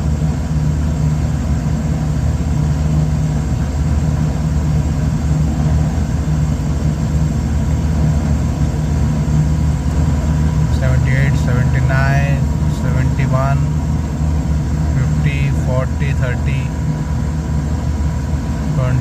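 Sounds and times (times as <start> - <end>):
air conditioner humming: 0.0 - 19.0
faint high whine: 0.0 - 19.0.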